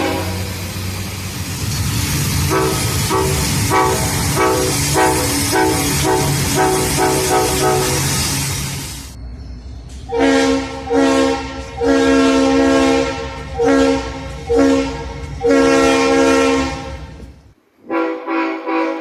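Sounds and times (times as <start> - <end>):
locomotive air horn blasts: 0.0 - 0.8, 2.5 - 8.3, 10.1 - 17.2, 17.8 - 19.0
train rumble: 0.0 - 19.0.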